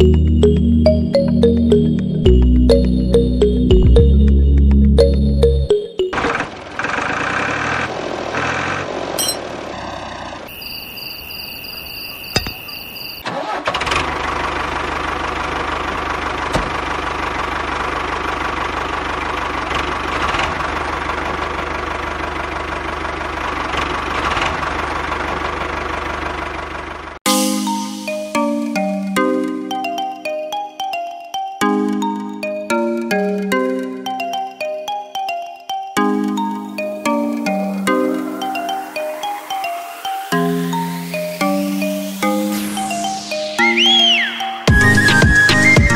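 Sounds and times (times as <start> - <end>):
small engine running: 6.2 - 10.5, 13.3 - 27.2
high electronic tones: 37.8 - 45.9.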